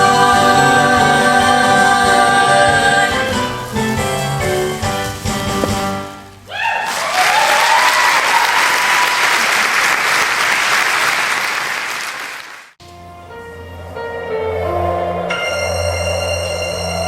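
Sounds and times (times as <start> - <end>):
music: 0.0 - 6.3, 12.8 - 17.0
audience applauding: 6.5 - 12.8.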